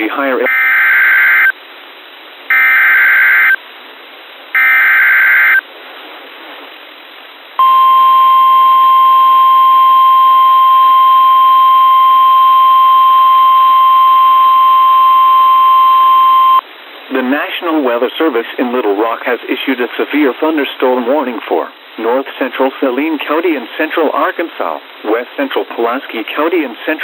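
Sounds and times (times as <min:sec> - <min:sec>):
steady attention tone: 0:04.6 - 0:05.6, 0:07.6 - 0:16.6.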